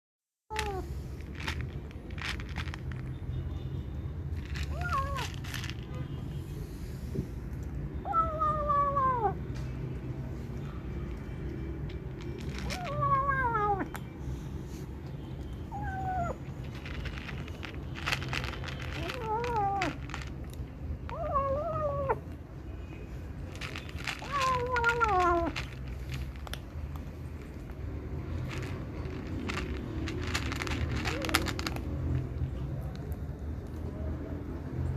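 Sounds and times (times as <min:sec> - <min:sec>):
cat meowing: 0:04.6 - 0:05.4, 0:08.0 - 0:09.4, 0:12.6 - 0:14.0, 0:15.7 - 0:16.5, 0:19.0 - 0:20.2, 0:21.1 - 0:22.3, 0:24.1 - 0:25.8.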